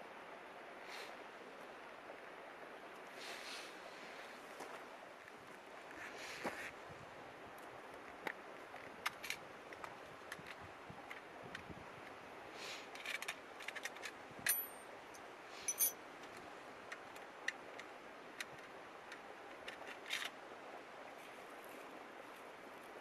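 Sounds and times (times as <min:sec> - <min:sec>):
bright metallic clinks: 0:14.5 - 0:14.8, 0:15.7 - 0:16.0
small clicks and taps: 0:16.2 - 0:20.3.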